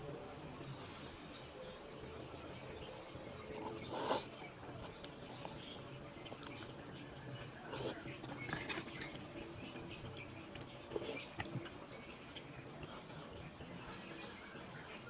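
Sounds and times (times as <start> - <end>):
noodles being chewed: 3.5 - 13.6.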